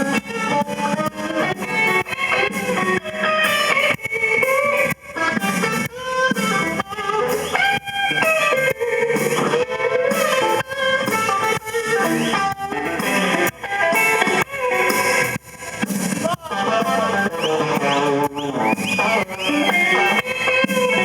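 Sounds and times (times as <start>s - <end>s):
blues band playing: 0.0s - 21.0s
guitar with bent sliding notes: 0.0s - 21.0s.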